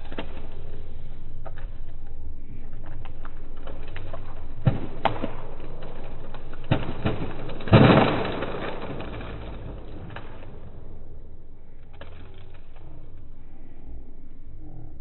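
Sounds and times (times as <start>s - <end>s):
low steady hum: 0.0s - 15.0s
wood cracking snaps: 2.8s - 11.2s, 11.8s - 13.2s
tree splintering crash: 2.9s - 13.2s.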